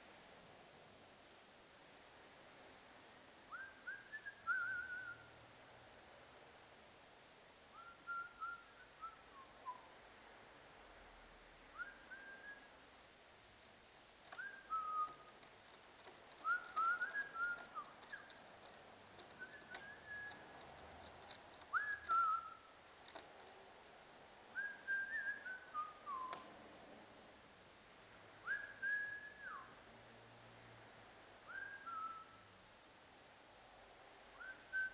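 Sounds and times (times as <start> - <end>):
faint clicks and taps: 12.7 - 22.2, 23.0 - 24.0
person whistling a tune: 16.4 - 18.2, 19.4 - 20.4.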